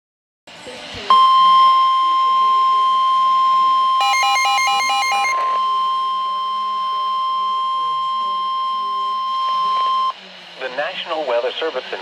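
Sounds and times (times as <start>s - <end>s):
rapid alternating beeps: 1.1s - 10.1s
steady high alarm tone: 1.1s - 10.2s
radio hiss: 5.3s - 12.0s.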